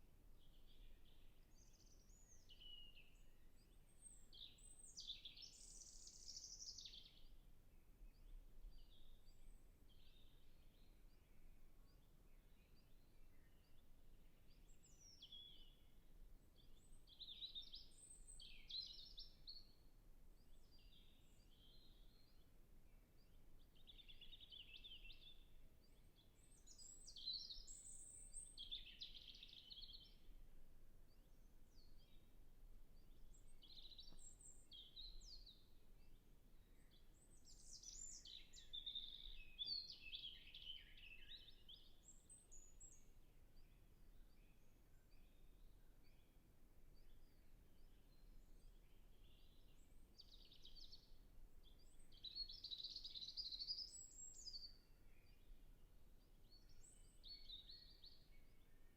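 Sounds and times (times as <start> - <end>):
robin singing: 0.4 - 7.4, 23.2 - 30.3, 33.0 - 46.2, 47.0 - 55.5.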